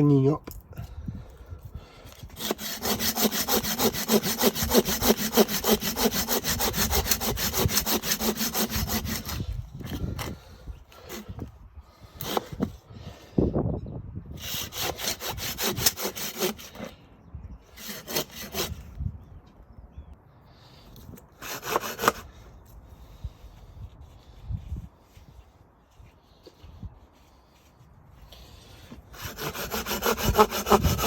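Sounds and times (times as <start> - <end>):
pruning saw cutting wood: 2.1 - 10.4, 11.0 - 11.4, 12.1 - 12.7, 14.4 - 17.0, 17.8 - 18.9, 21.3 - 22.4, 29.1 - 31.0.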